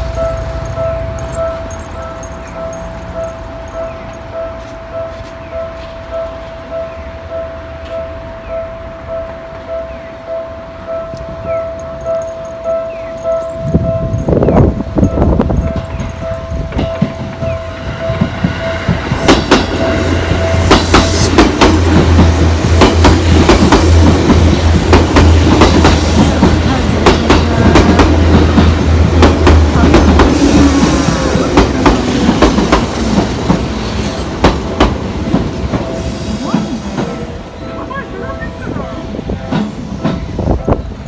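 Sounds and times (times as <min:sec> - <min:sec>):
level-crossing warning bell: 0:00.0 - 0:41.0
low train hum: 0:00.0 - 0:41.0
train wheels clacking over rail joints: 0:15.0 - 0:37.3.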